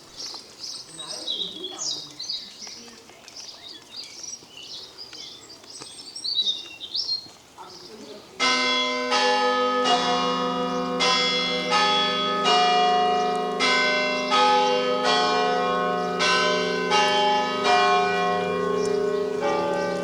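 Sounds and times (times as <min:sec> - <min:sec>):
church bells ringing: 0:08.4 - 0:20.0.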